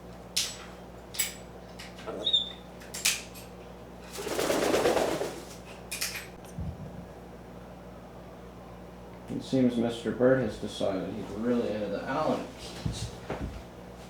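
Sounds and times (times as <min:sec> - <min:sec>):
metal keys clinking: 0:00.4 - 0:02.0.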